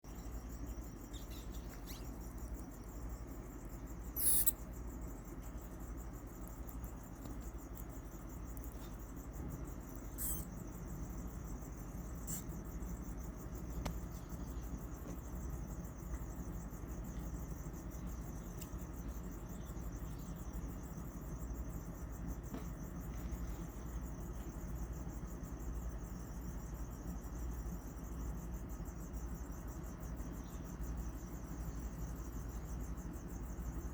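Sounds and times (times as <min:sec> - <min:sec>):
crickets chirping: 0:00.0 - 0:33.9
low steady hum: 0:00.0 - 0:33.9
rat squeaking: 0:00.2 - 0:02.7, 0:04.0 - 0:04.8, 0:09.9 - 0:10.7, 0:12.1 - 0:12.7.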